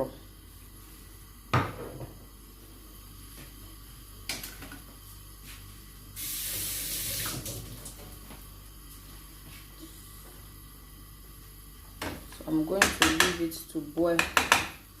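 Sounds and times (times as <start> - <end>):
running water: 6.2 - 8.0.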